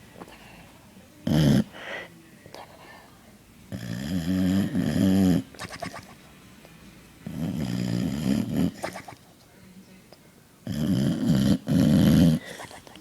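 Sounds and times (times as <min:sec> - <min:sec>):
dog snoring: 0:01.2 - 0:01.8, 0:03.7 - 0:06.1, 0:07.2 - 0:09.2, 0:10.6 - 0:12.7.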